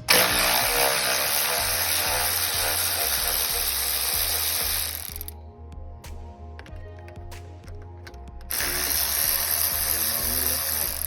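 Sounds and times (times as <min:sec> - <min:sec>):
ratchet wrench ratcheting: 0:00.0 - 0:05.4, 0:07.7 - 0:11.0.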